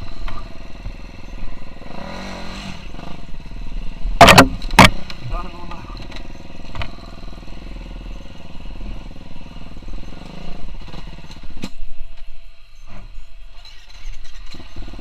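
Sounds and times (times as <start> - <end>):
dirt bike engine running: 0.0 - 15.0
sharp knocks: 4.2 - 5.2.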